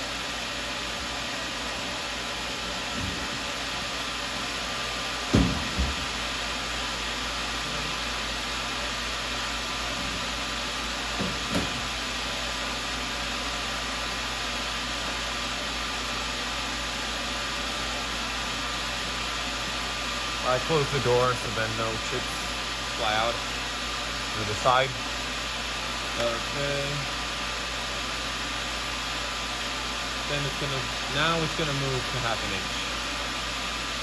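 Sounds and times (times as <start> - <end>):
mill spindle whirring: 0.0 - 34.0.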